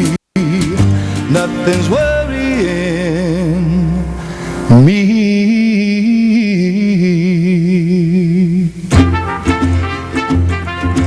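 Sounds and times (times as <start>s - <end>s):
singer holding long note with vibrato: 0.0s - 10.3s
brass: 8.9s - 11.0s.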